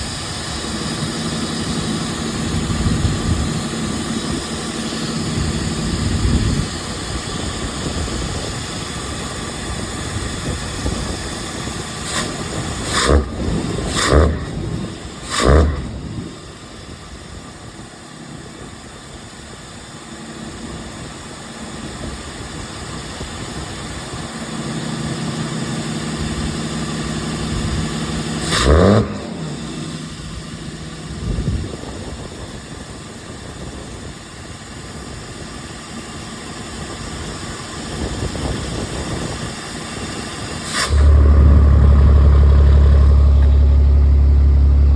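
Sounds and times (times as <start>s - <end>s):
diesel engine running and revving: 0.0s - 17.4s, 23.8s - 33.4s, 36.5s - 44.9s.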